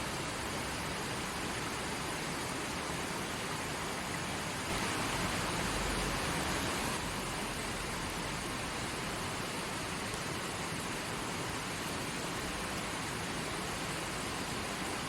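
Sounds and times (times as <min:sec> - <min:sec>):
stream water rushing: 0:00.0 - 0:15.0.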